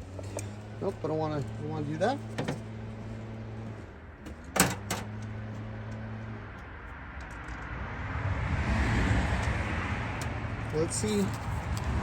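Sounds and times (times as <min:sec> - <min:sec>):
passing vehicle rushing: 0:05.3 - 0:12.0.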